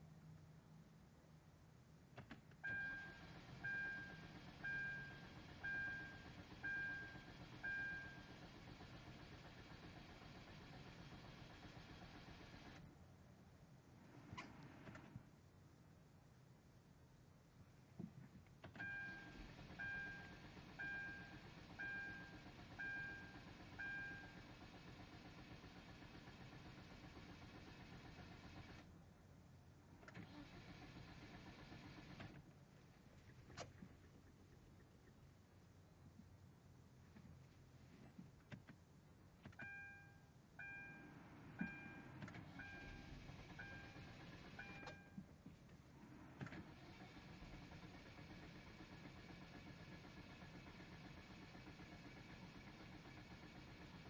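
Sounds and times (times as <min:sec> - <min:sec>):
low electrical hum: 0:00.0 - 0:47.8
dashboard warning chime: 0:02.6 - 0:08.3, 0:18.8 - 0:24.4, 0:39.6 - 0:44.0, 0:44.6 - 0:45.2.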